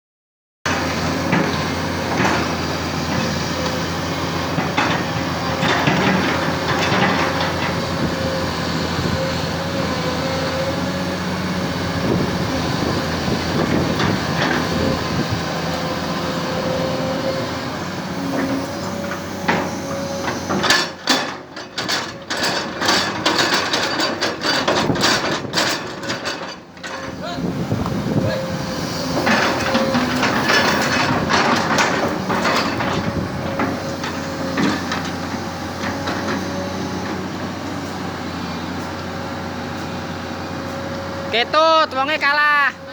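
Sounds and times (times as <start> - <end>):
excavator diesel engine: 0.7 - 42.9.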